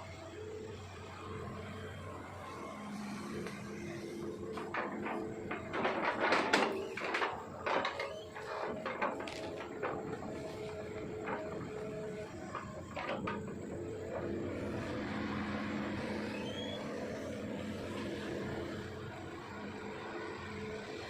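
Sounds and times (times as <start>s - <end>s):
excavator diesel engine running: 0.0s - 21.0s.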